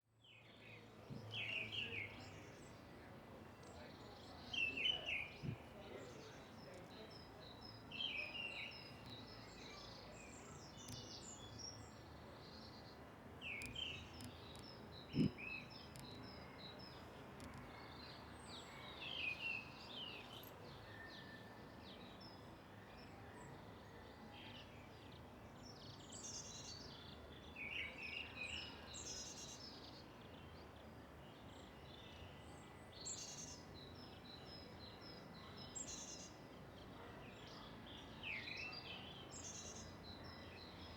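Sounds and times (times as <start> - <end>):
small birds chirping: 3.6 - 21.1.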